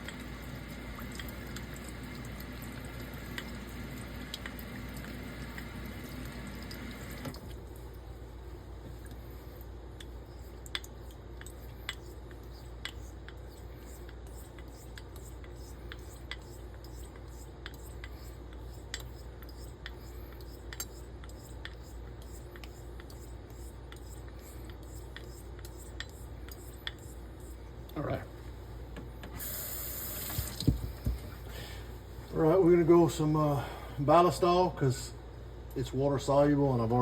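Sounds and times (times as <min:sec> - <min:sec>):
razor strokes on whetstone: 0:10.3 - 0:27.6.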